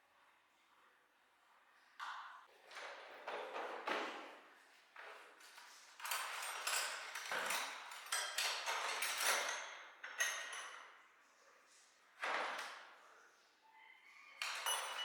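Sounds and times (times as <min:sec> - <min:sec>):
metallic knocks and clinks: 0:14.4 - 0:15.0.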